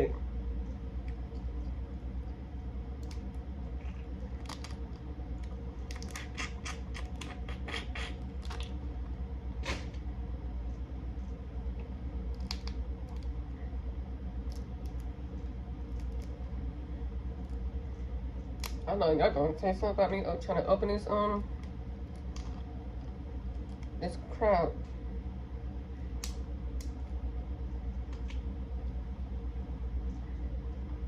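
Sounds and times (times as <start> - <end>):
steady low hum: 0.0 - 31.0
crab shell cracking and snapping: 2.9 - 8.8, 11.8 - 13.4, 14.4 - 15.2, 15.8 - 16.5, 18.4 - 18.8, 21.6 - 24.0, 26.2 - 27.0.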